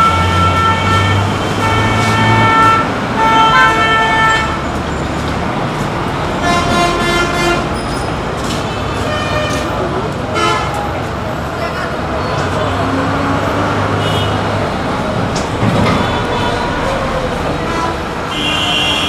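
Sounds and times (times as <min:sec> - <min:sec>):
vehicle horns honking: 0:00.0 - 0:04.7, 0:06.4 - 0:07.9, 0:08.7 - 0:10.9, 0:14.0 - 0:14.5, 0:15.9 - 0:19.0
traffic engine and road noise: 0:00.0 - 0:19.0.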